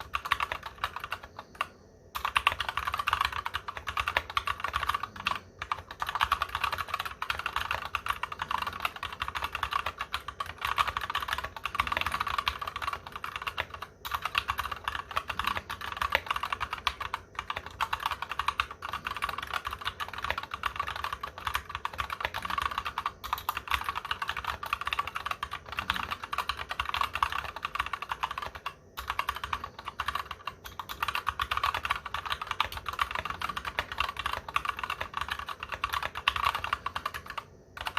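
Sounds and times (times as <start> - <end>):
mechanical keyboard typing: 0.0 - 37.9.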